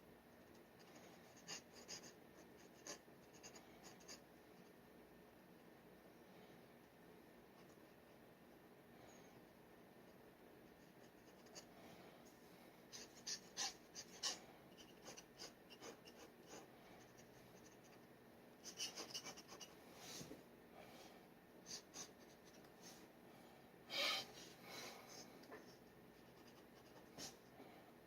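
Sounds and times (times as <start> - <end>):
dip pen scratching on paper: 0.6 - 4.2, 12.9 - 18.0, 18.6 - 19.8.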